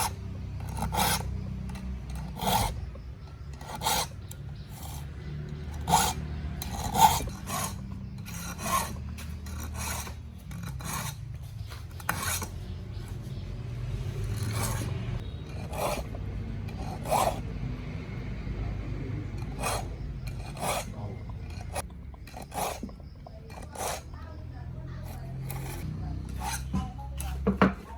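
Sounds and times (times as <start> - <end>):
hand filing scraping: 0.0 - 18.0, 19.2 - 27.8.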